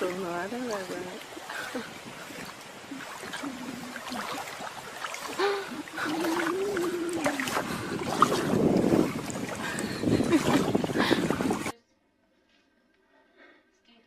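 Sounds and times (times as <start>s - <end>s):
drawn-out wavering vocal sounds: 2.8s - 4.6s, 5.3s - 9.3s.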